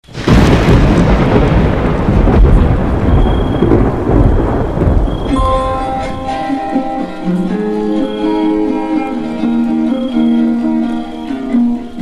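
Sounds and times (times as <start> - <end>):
rain falling: 0.0 - 12.0
thunder rumbling: 0.1 - 7.6
plucked guitar notes: 5.3 - 12.0.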